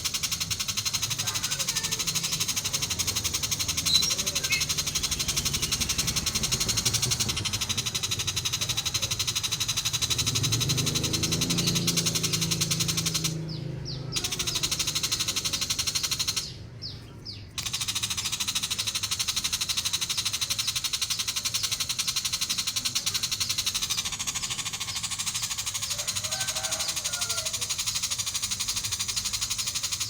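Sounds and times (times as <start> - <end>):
shrike rattling chatter: 0.0 - 30.0.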